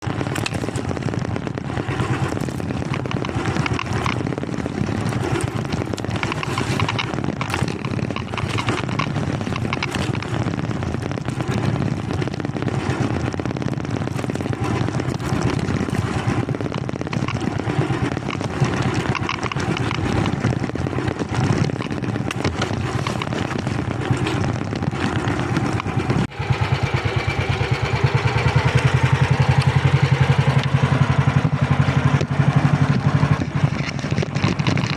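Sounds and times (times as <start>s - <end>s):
small engine running: 0.0s - 10.3s, 24.0s - 34.9s.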